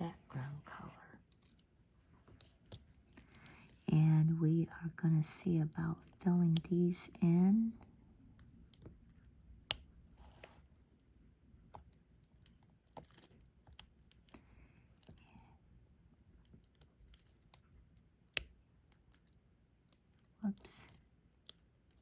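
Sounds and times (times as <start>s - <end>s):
stylus clicks and taps: 8.3s - 10.0s, 16.6s - 22.0s.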